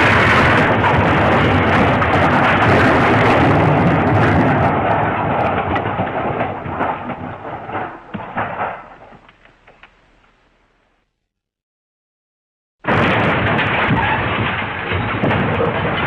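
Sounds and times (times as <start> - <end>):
loud crashing smash: 0.0 - 9.3, 12.8 - 16.0
falling debris crackles: 0.0 - 10.5, 12.8 - 16.0.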